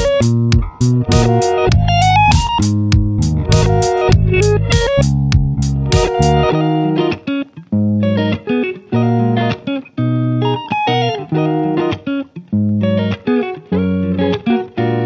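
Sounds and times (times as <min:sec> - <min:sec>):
bass: 0:00.0 - 0:06.5
plucked guitar melody: 0:00.0 - 0:15.0.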